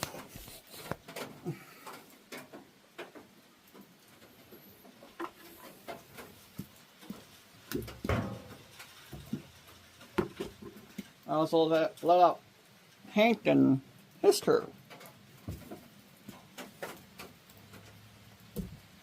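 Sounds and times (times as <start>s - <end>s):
clicks and knocks of handling: 14.8s - 18.0s.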